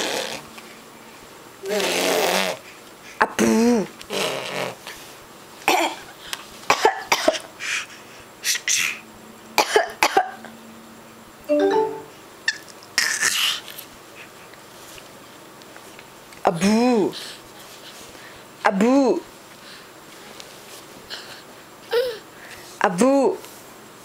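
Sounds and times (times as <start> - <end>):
baby vocalizing: 1.6 - 2.6
baby fake coughing: 5.7 - 6.0, 6.7 - 7.5, 9.6 - 10.4.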